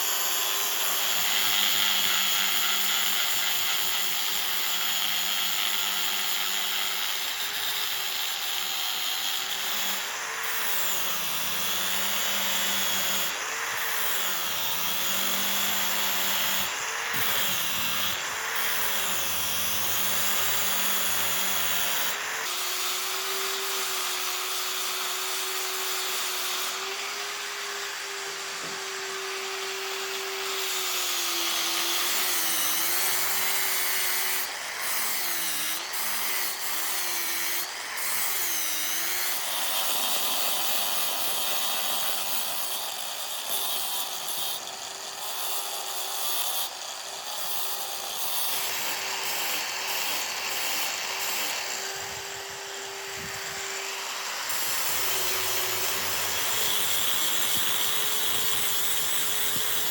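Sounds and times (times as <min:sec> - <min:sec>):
power tool motor under load: 0:48.2 - 0:59.9.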